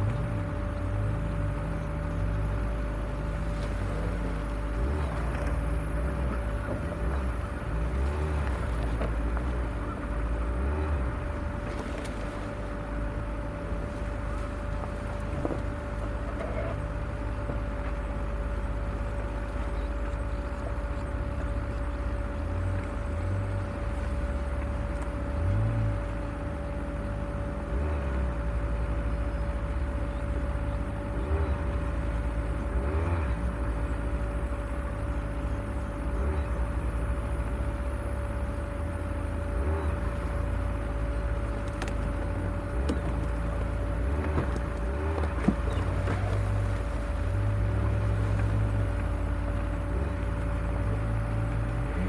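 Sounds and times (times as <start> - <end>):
off-road vehicle engine running: 0.0 - 52.0.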